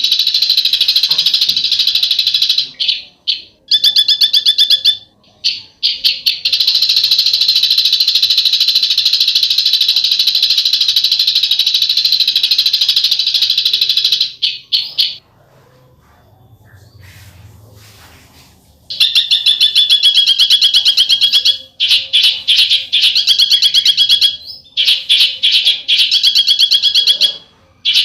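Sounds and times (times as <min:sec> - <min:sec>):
bird harsh rattling call: 0:00.0 - 0:05.0.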